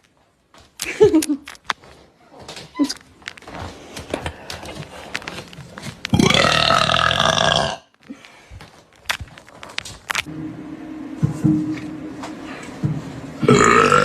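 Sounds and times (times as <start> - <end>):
person burping loudly: 6.1 - 8.0, 13.4 - 14.0.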